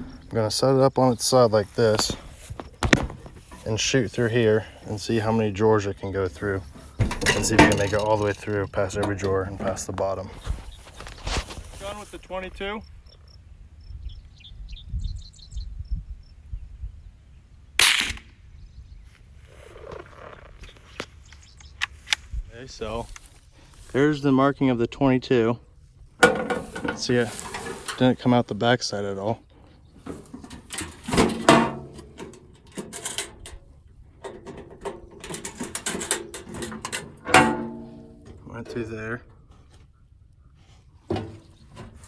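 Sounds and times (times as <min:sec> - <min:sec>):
metal toolbox drawers clattering: 0:06.6 - 0:09.9, 0:26.2 - 0:28.2, 0:30.0 - 0:33.6, 0:34.2 - 0:38.6, 0:41.1 - 0:42.0
rifle shot hitting steel: 0:17.8 - 0:18.3.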